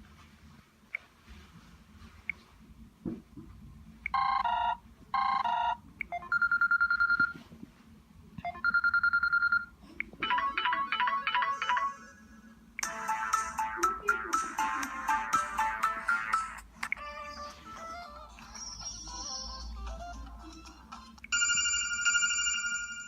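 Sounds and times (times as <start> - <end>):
melodic ringtone with a beat: 8.5 - 12.1, 12.8 - 23.0.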